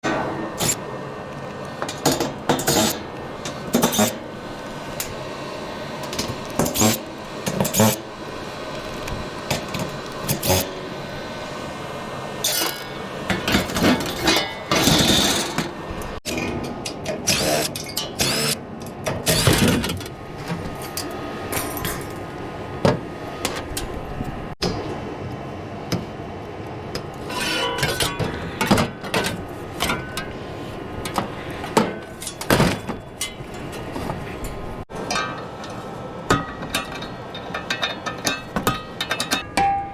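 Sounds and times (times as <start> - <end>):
steady background noise: 0.0 - 39.9
metal clanks and knocks: 1.8 - 4.2, 12.5 - 22.2, 27.0 - 30.4, 31.0 - 39.9.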